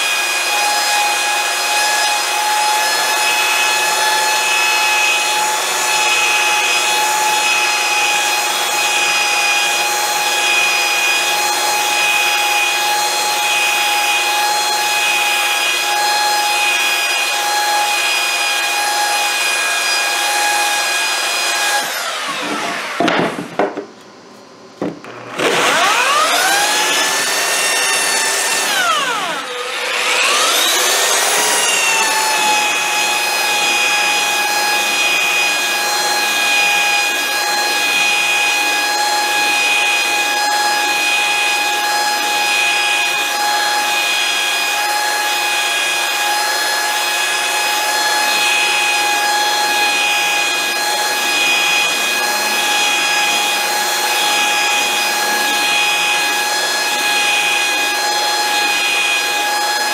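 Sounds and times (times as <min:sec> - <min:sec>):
power saw cutting wood: 0:00.0 - 0:23.8, 0:24.8 - 0:59.9.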